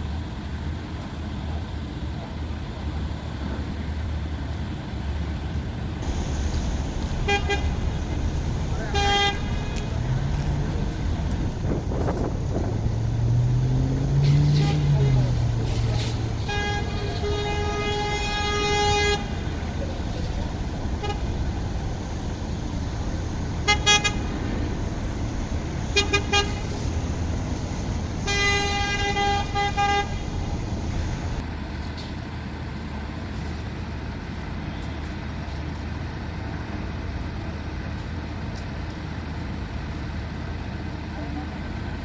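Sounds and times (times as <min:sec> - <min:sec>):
heavy engines rumbling: 0:00.0 - 0:42.0
vehicle horn tooting: 0:07.1 - 0:08.0, 0:08.7 - 0:09.9, 0:14.3 - 0:15.0, 0:16.4 - 0:19.6, 0:21.0 - 0:21.4, 0:23.6 - 0:24.4, 0:25.9 - 0:27.0, 0:28.2 - 0:30.4.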